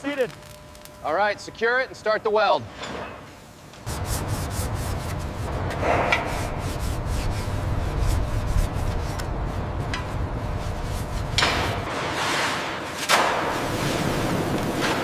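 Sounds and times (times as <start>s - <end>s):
arc welding crackling: 0.0s - 2.6s, 6.5s - 12.1s, 12.8s - 15.0s.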